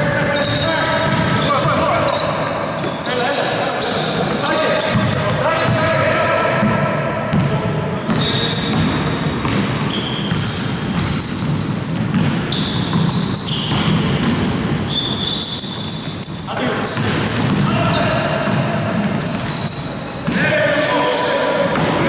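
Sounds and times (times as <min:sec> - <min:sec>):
basketball bouncing: 0:00.0 - 0:02.0, 0:04.2 - 0:17.8, 0:21.7 - 0:22.0
sneakers squeaking on floor: 0:00.0 - 0:22.0.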